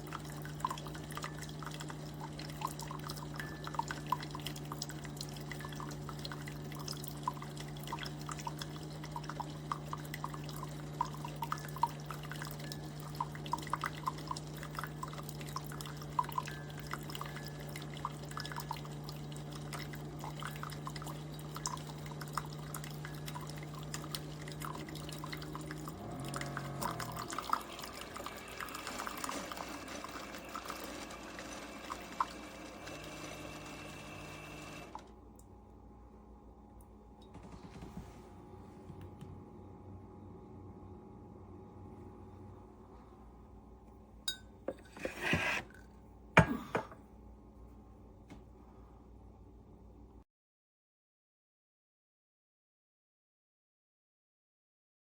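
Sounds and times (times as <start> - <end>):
coffee dripping into cup: 0.0 - 35.0
coffee maker pump hum: 0.0 - 50.2
coffee maker hissing: 20.2 - 35.0, 44.7 - 45.8.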